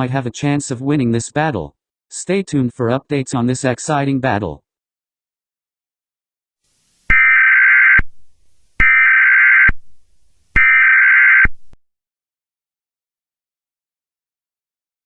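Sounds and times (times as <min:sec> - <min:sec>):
harsh warbling data bursts: 0:07.1 - 0:08.0.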